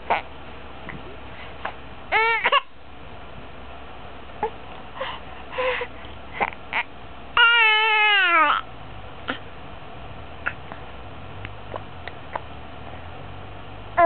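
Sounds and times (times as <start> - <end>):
baby hiccupping: 10.4 - 10.8.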